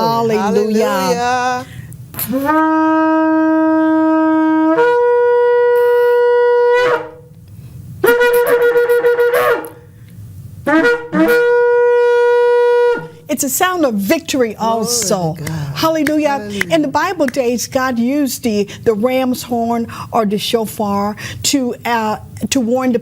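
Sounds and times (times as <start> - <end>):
shofar blasts: 2.2 - 7.3, 8.0 - 9.9, 10.6 - 13.3.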